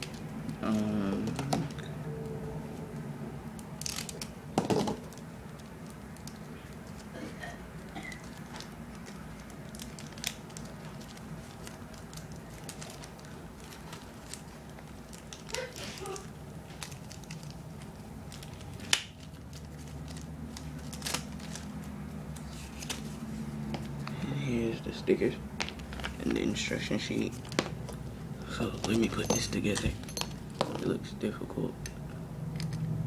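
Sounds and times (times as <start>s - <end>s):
steady low hum: 0.0s - 33.0s
packaging crinkling: 3.5s - 24.2s, 25.6s - 30.7s.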